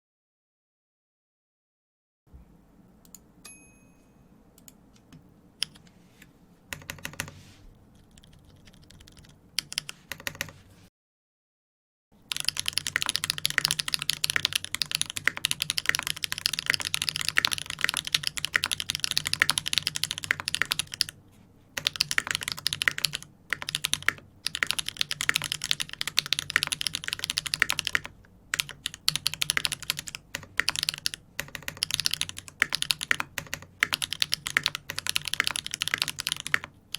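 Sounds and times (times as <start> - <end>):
mechanical keyboard typing: 5.6 - 5.8, 6.7 - 7.3, 8.0 - 10.6, 12.3 - 21.2, 21.8 - 36.9.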